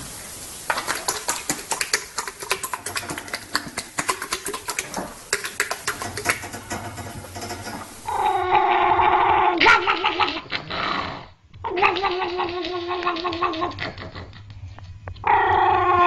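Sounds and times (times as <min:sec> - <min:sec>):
animal clicks and taps: 0:00.7 - 0:08.1
dog whining growl: 0:08.1 - 0:14.4, 0:15.2 - 0:16.0.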